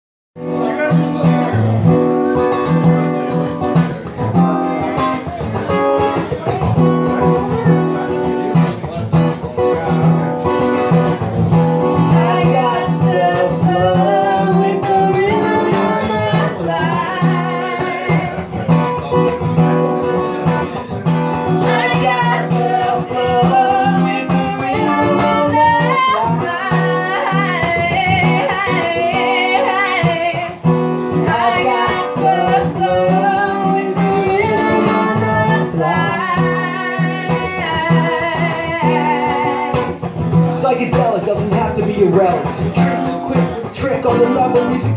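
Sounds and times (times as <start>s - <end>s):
acoustic guitar playing: 0.4s - 44.9s
person singing: 10.0s - 44.9s.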